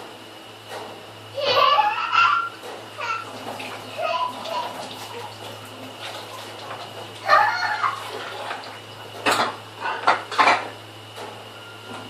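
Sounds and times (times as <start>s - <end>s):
dishes and cutlery clattering: 9.2s - 10.7s.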